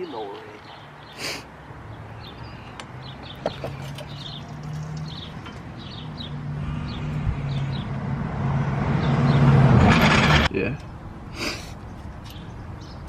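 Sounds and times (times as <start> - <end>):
small birds chirping: 0.0 - 8.0, 10.6 - 13.0.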